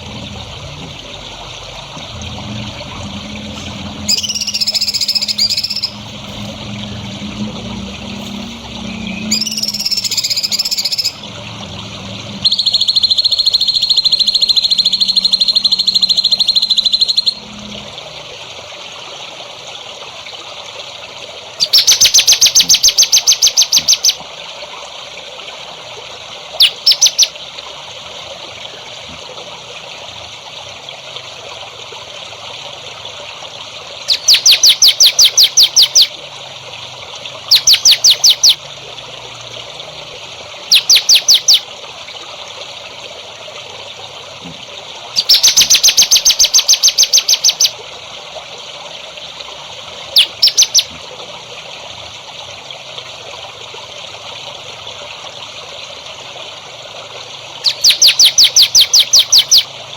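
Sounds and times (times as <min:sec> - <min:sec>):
trickling water: 0:00.0 - 0:59.9
songbird trilling: 0:04.1 - 0:06.2, 0:09.1 - 0:11.2, 0:12.4 - 0:17.4, 0:21.6 - 0:24.2, 0:26.6 - 0:27.3, 0:34.1 - 0:36.1, 0:37.5 - 0:38.6, 0:40.7 - 0:41.6, 0:45.2 - 0:47.7, 0:50.2 - 0:50.9, 0:57.6 - 0:59.7.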